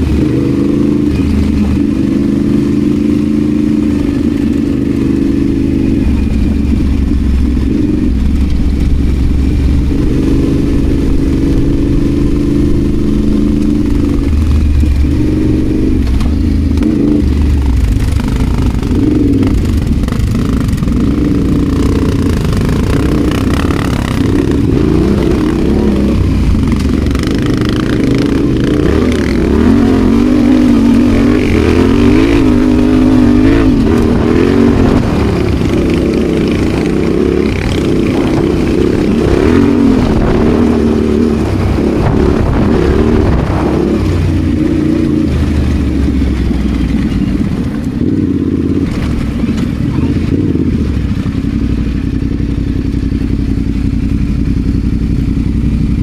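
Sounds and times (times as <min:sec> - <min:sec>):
motorcycle engine off-road: 0:00.0 - 0:56.0
knocks and clatter from rough ground: 0:48.8 - 0:50.2.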